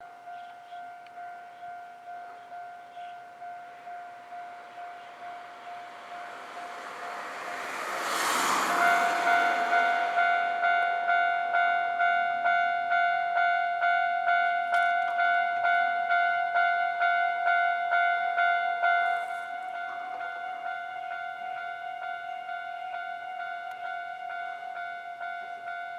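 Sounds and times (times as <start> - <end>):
level-crossing warning bell: 0.0 - 25.9
rushing noise: 5.2 - 11.3.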